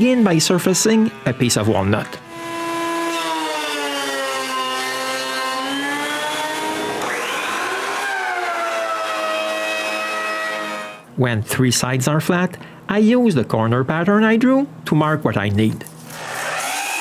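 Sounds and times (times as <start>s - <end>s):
blades cutting wood: 0.0s - 11.0s, 15.9s - 17.0s
surfacing machine whining: 0.0s - 11.1s, 16.0s - 17.0s.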